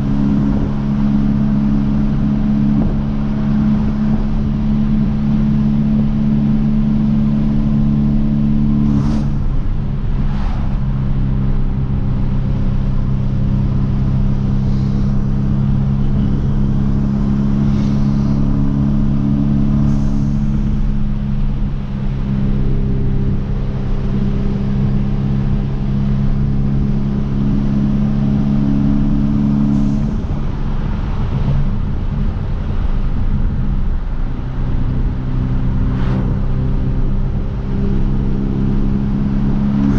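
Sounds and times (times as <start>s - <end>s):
car engine cruising: 0.0s - 39.9s
exhaust drone: 0.0s - 39.9s.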